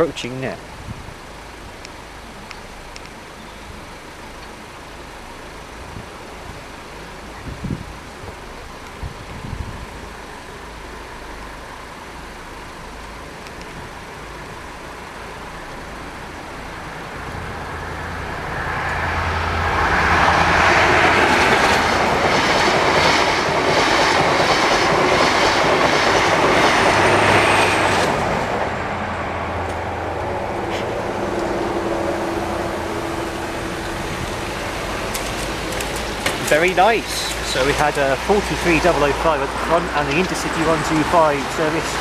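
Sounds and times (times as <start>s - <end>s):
diesel train engine drone: 0.0s - 42.0s
train wheels clattering: 34.2s - 38.0s.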